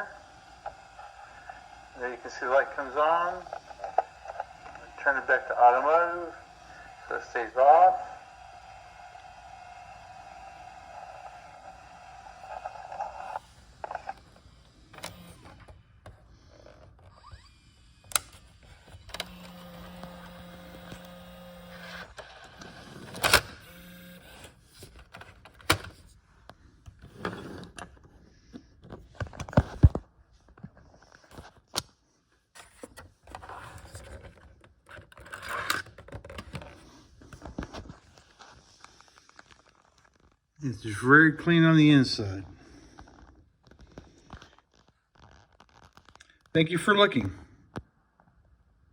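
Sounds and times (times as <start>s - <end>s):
small tape motor humming: 0.0s - 25.2s.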